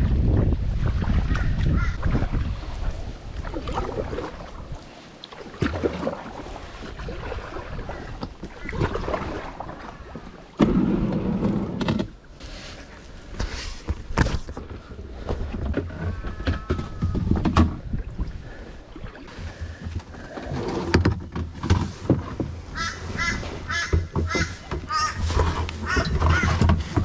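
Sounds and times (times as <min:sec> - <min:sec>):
paddle splashing in water: 0:00.0 - 0:27.0.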